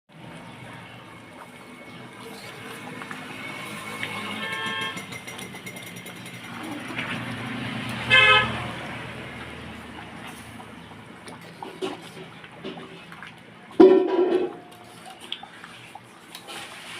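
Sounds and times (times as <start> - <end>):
engine rumbling: 0.1 - 14.8
horn honking: 4.1 - 5.1, 8.0 - 8.7.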